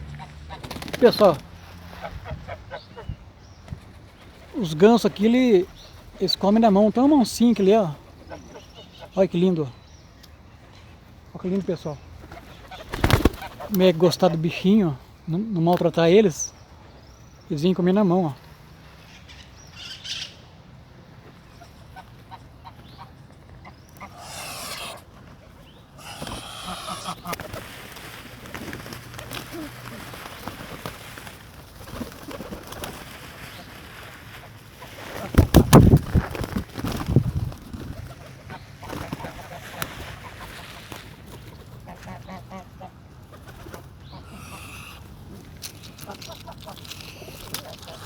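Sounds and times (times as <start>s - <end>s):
geese and ducks calling: 21.6s - 25.4s, 26.0s - 27.7s, 41.8s - 43.0s
geese honking: 24.0s - 25.1s, 26.0s - 27.3s.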